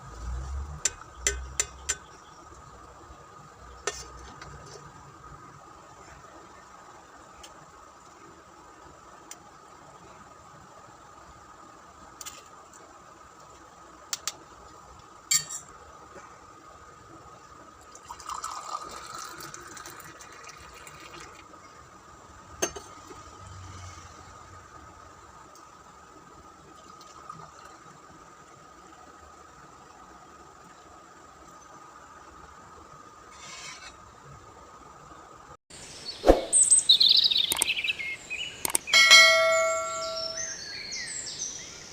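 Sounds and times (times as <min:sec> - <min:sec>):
faint steady hum: 0:00.0 - 0:41.9
utensils clinking: 0:15.3 - 0:15.7
liquid pouring: 0:17.9 - 0:21.5
quick chirping sweeps: 0:36.0 - 0:38.2, 0:38.9 - 0:41.2
sharp clicks: 0:37.4 - 0:37.8, 0:38.6 - 0:38.9
loud ringing chime: 0:38.9 - 0:40.6.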